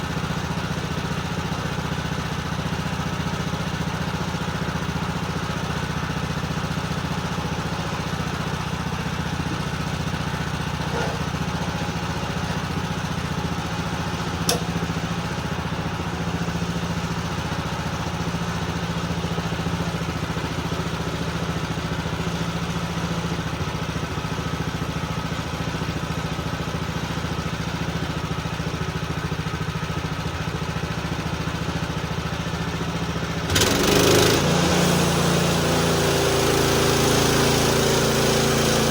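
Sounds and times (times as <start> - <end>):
sawmill gasoline engine running: 0.0 - 38.9
single click: 14.5 - 14.7.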